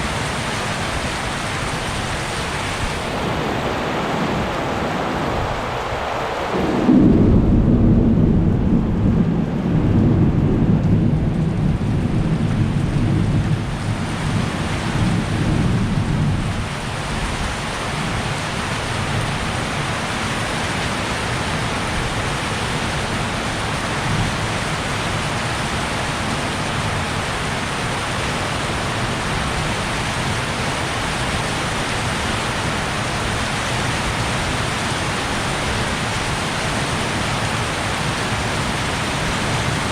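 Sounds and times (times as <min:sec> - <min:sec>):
heavy rain falling: 0:00.0 - 0:39.9
thunder clap and rumble: 0:05.4 - 0:25.9.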